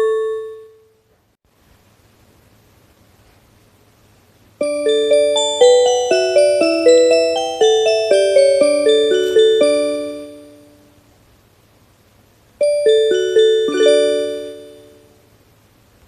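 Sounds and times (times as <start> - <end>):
bell-like chime melody: 0.0 - 0.9, 4.6 - 10.9, 12.6 - 15.2.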